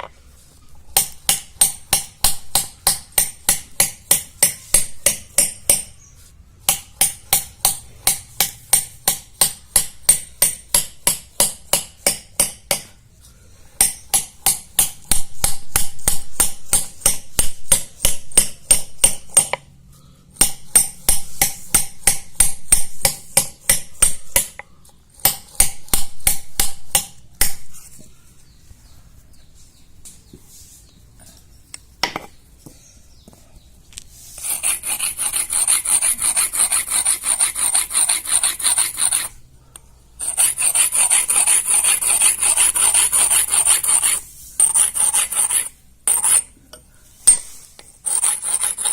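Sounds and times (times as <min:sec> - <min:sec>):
hammer and chisel tapping stone: 0:01.0 - 0:05.9, 0:06.7 - 0:13.0, 0:13.8 - 0:19.7.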